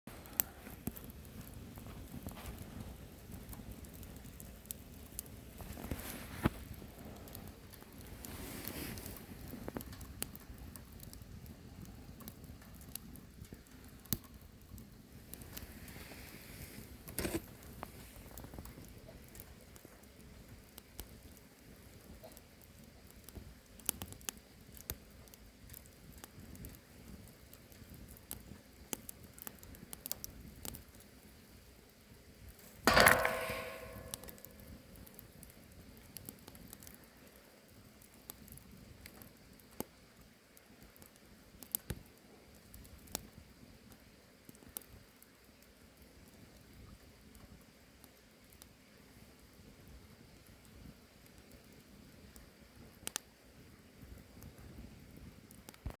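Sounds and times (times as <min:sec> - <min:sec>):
wood fire crackling: 0:00.1 - 0:56.0
loud knock with metallic ring: 0:32.9 - 0:34.6.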